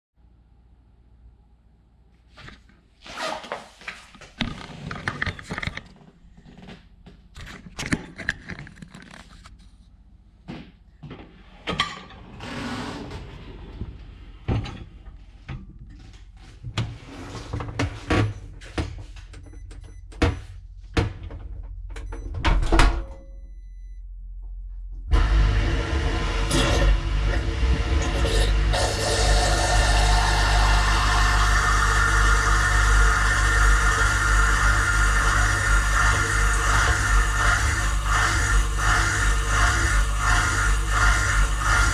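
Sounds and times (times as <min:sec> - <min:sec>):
steady low hum: 0:18.3 - 0:41.9.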